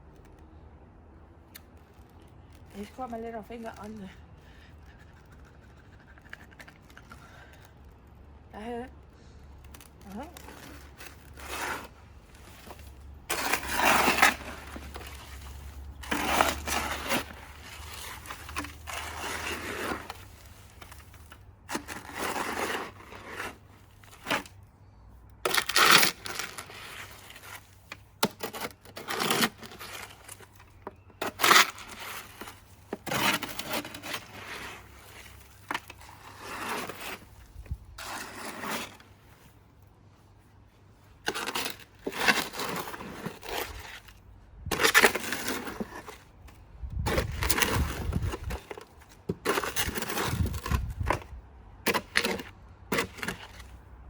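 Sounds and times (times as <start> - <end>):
trowel scraping gritty mix: 9.6 - 24.7, 25.4 - 39.7, 41.2 - 53.8.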